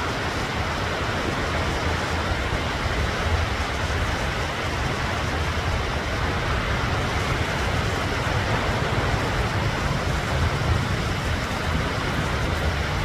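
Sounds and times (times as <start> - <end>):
ocean surf rumble: 0.0 - 13.0.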